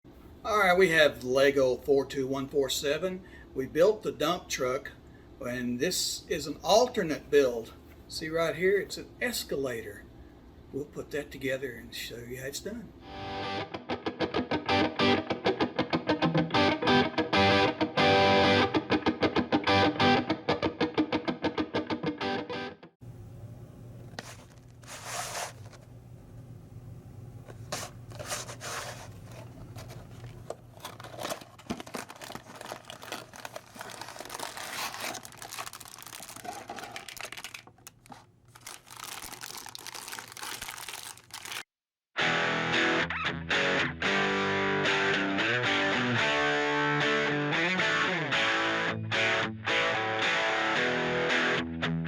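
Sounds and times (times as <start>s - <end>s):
background music with guitar: 13.0s - 22.9s, 42.2s - 52.0s.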